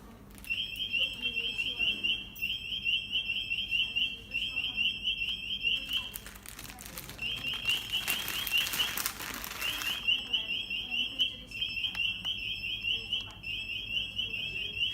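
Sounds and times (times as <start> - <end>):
security gate alarm beeping: 0.4 - 6.3, 7.0 - 14.9
rustling noise: 6.2 - 10.0.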